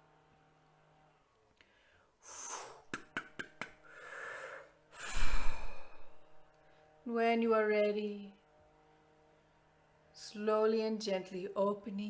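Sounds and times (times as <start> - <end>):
person breathing deeply: 1.6 - 3.2, 3.8 - 6.4.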